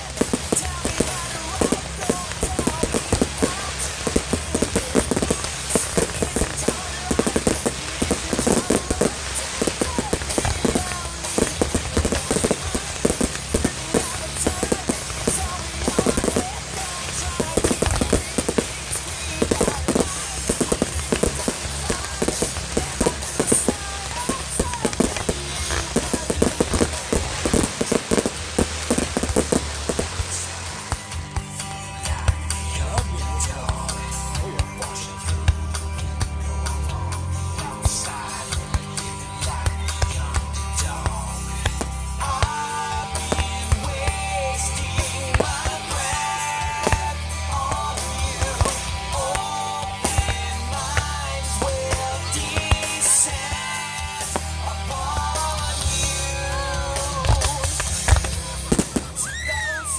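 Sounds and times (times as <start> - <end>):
fireworks popping and crackling: 0.0 - 59.9
music playing: 0.0 - 59.9.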